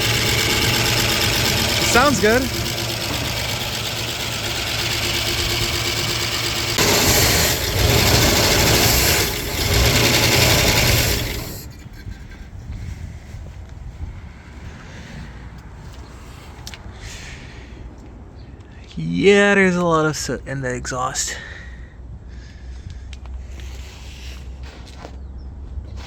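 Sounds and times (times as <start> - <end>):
car engine running: 0.0 - 11.9.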